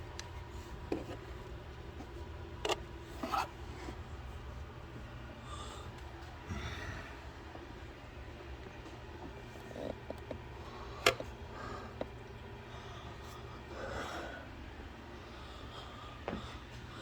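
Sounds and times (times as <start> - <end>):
steady low hum: 0.0 - 17.0
rubbing and scraping handling noises: 0.4 - 4.3.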